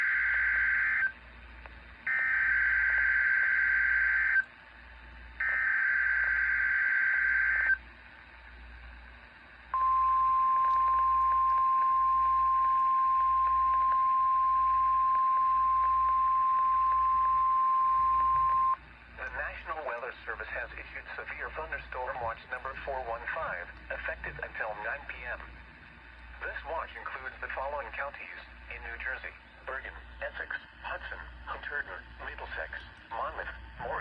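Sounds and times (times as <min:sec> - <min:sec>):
steady single-pitch alert tone: 0:05.4 - 0:07.8, 0:09.8 - 0:18.8.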